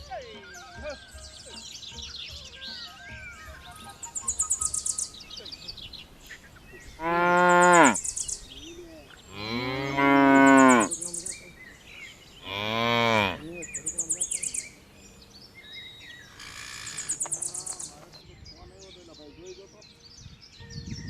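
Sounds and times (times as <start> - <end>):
high rapid chirping trills: 0.1 - 5.7
cow mooing: 7.0 - 8.0, 9.3 - 11.1, 12.4 - 13.6.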